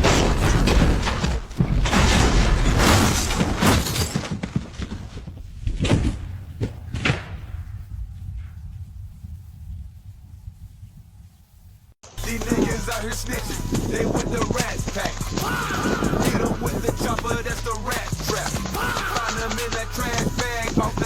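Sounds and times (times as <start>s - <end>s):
loud banging and thuds: 0.0s - 7.9s.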